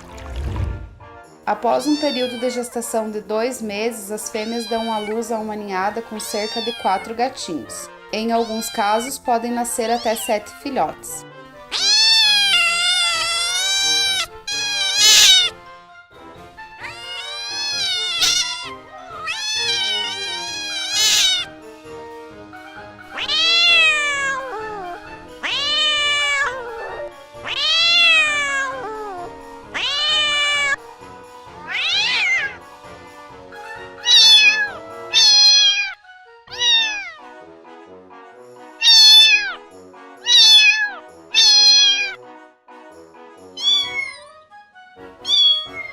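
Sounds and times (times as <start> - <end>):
soft background music: 0.0 - 45.9
cat meowing: 1.8 - 2.9, 4.3 - 7.4, 8.2 - 10.5, 11.6 - 15.6, 16.7 - 21.5, 22.8 - 30.8, 31.6 - 32.6, 33.8 - 37.3, 38.8 - 39.6, 40.2 - 42.2, 43.5 - 44.4, 45.2 - 45.9.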